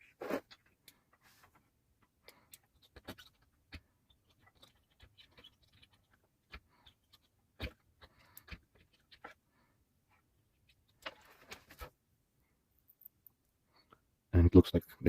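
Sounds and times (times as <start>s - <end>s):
small parts and tool clicking: 12.8s - 13.5s.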